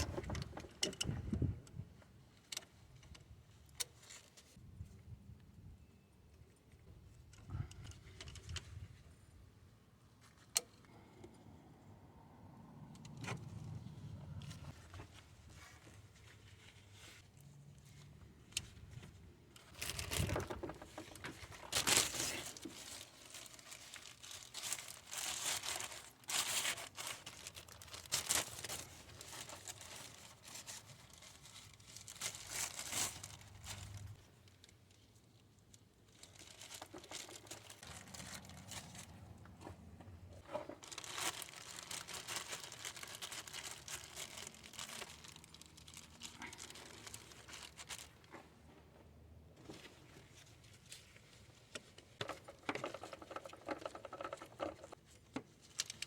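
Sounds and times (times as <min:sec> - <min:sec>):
rustling and scraping: 0:00.0 - 0:01.8, 0:13.0 - 0:56.0.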